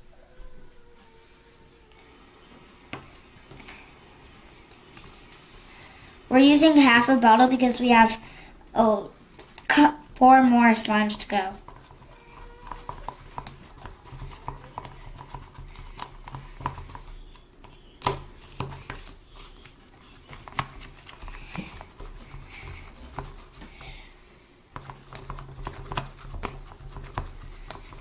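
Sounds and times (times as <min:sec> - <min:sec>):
low steady hum: 0:00.0 - 0:28.0
stick scraping and tapping container: 0:09.6 - 0:23.8, 0:24.8 - 0:28.0.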